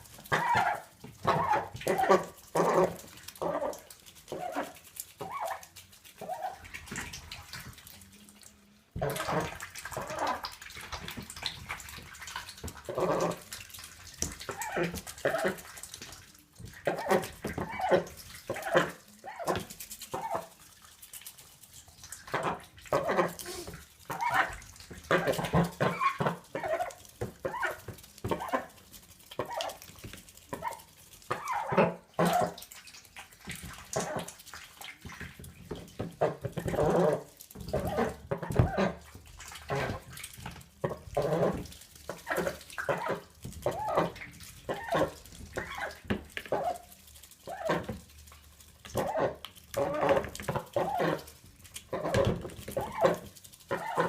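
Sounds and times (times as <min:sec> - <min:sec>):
ducks slurping and splashing water: 0:00.0 - 0:54.0.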